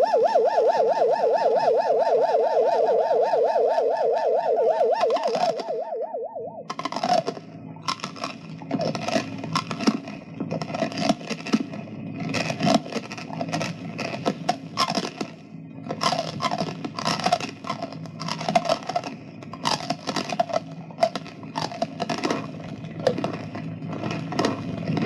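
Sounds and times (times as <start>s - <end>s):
strange falling calls: 0.0s - 9.9s
crunching and chomping: 6.7s - 25.0s.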